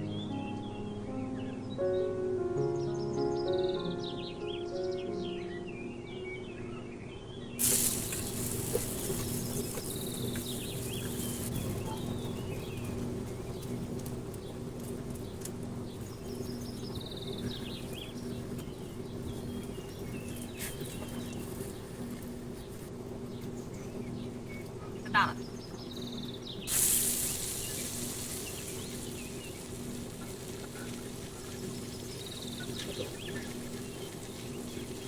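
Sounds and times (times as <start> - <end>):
birds chirping: 0.0 - 35.0
steady low hum and hiss: 0.0 - 35.0
loud burst of hiss: 7.6 - 11.6, 26.7 - 33.7.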